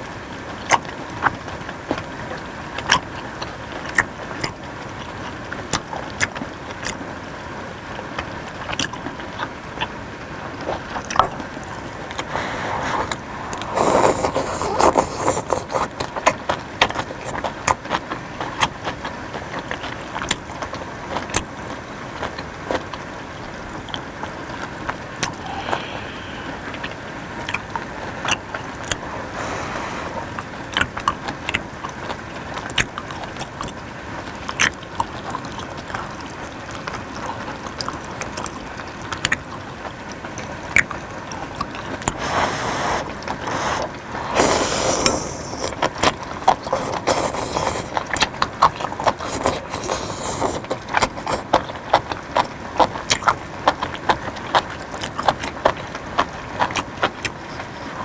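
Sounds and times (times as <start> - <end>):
steady hiss: 25.3 - 27.4, 42.2 - 45.8.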